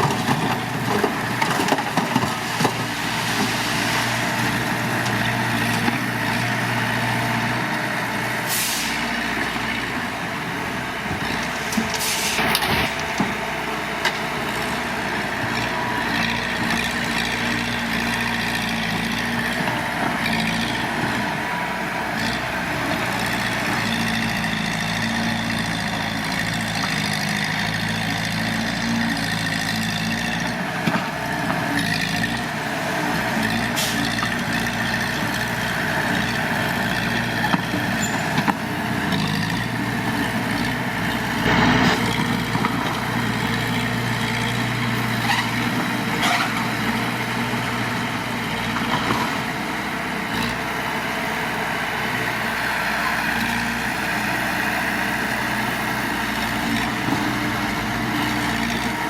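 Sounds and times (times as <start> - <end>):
bulldozer engine running: 0.0 - 59.0
dump truck engine running: 0.0 - 59.0
brief hissing bursts: 12.0 - 12.5.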